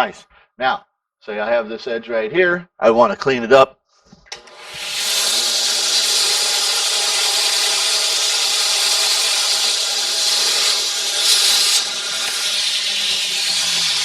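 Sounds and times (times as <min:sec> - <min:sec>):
abrasive belt grinding metal: 0:04.3 - 0:14.0
belt grinder motor hum: 0:04.3 - 0:14.0.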